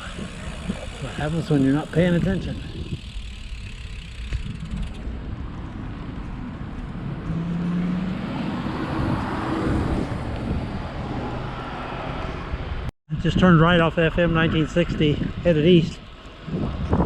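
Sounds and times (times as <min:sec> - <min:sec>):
car passing: 0:00.0 - 0:12.9.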